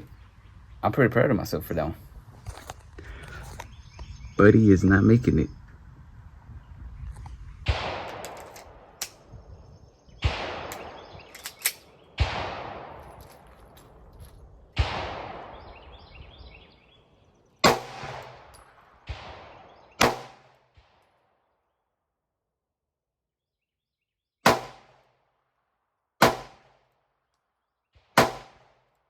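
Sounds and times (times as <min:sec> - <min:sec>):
echoing gunshots: 0:07.6 - 0:21.0, 0:24.4 - 0:25.1, 0:26.2 - 0:26.8, 0:28.0 - 0:28.8.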